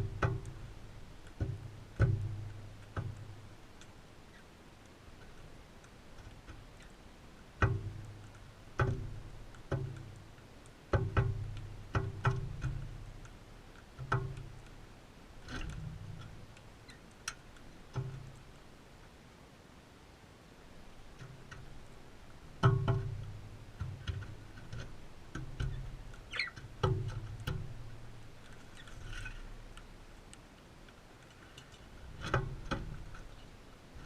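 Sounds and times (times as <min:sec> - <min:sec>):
beaks knocking on feeder: 0:00.0 - 0:03.3, 0:07.6 - 0:08.1, 0:08.7 - 0:10.2, 0:10.9 - 0:13.0, 0:22.5 - 0:27.8.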